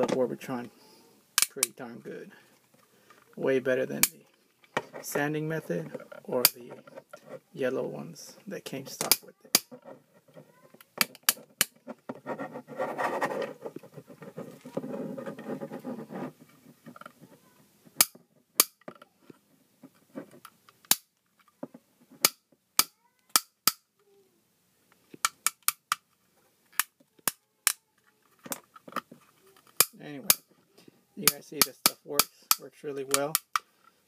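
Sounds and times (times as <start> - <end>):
rough noise: 0.0 - 18.0.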